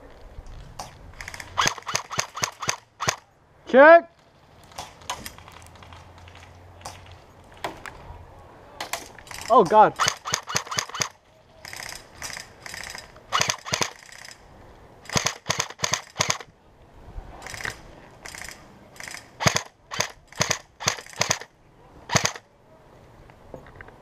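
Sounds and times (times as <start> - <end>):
airsoft guns firing: 1.2 - 3.2, 8.8 - 14.1, 15.0 - 16.5, 18.2 - 21.5, 22.1 - 22.4.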